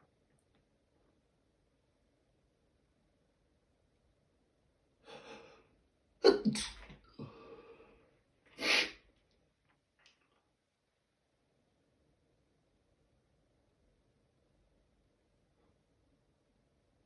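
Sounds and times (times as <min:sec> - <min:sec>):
person sneezing: 0:06.2 - 0:07.0, 0:08.6 - 0:09.0
short burst of breath: 0:08.6 - 0:09.0.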